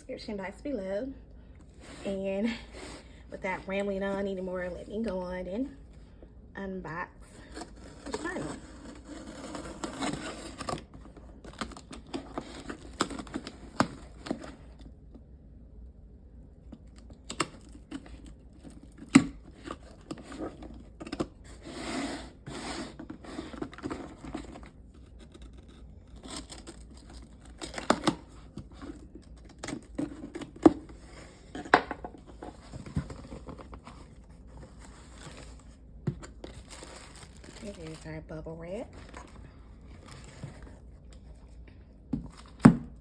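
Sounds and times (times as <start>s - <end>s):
packaging tearing and crinkling: 7.6s - 14.8s, 23.6s - 30.8s, 32.8s - 38.1s.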